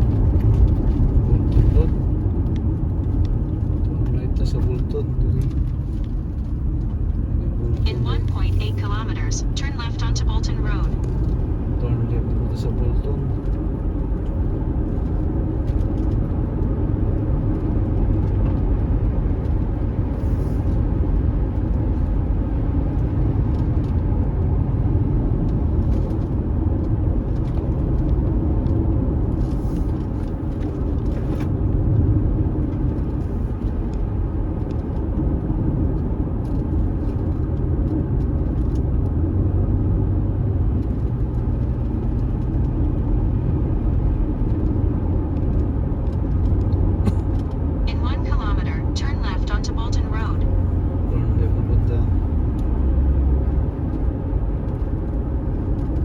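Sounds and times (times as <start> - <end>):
car driving on unpaved road: 0.0 - 56.0.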